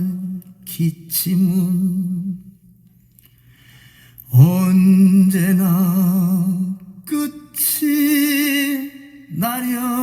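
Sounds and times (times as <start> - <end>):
person singing slow song: 0.0 - 3.3, 4.1 - 10.0.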